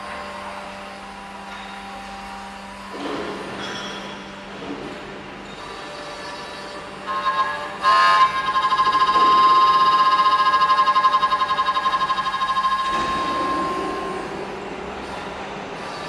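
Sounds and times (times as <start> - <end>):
low rough machine noise: 0.0 - 16.0
drilling machine high whine: 5.6 - 16.0.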